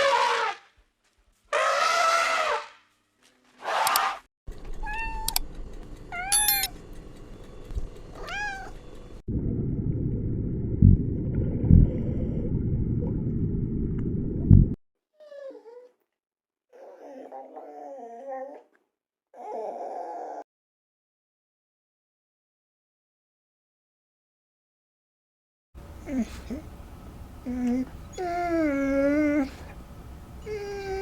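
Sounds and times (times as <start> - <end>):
cat meowing: 4.8 - 5.4, 8.2 - 8.8
low rumbling noise: 9.2 - 14.8.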